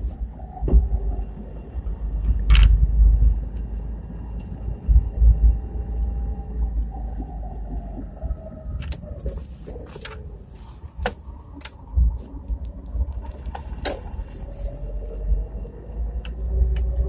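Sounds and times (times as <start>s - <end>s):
muffled car driveline rumble: 0.0s - 17.0s.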